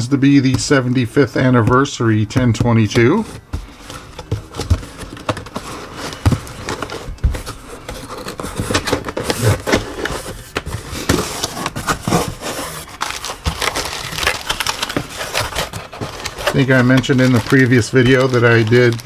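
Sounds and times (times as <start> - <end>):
cardboard scraping and crinkling: 2.4 - 19.0.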